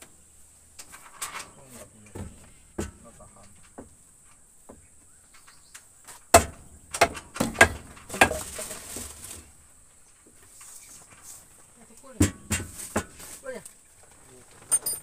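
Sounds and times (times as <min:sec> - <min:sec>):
scraping rustle: 0:00.4 - 0:06.3, 0:07.4 - 0:15.0
sharp knocks on wood: 0:02.1 - 0:03.1, 0:06.3 - 0:08.4, 0:12.2 - 0:13.2.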